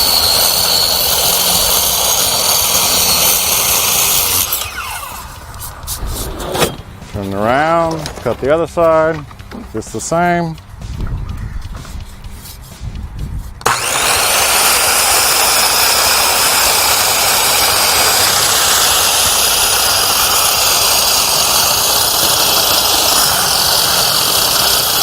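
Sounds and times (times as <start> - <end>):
circular saw cutting: 0.0 - 7.9, 13.6 - 25.0.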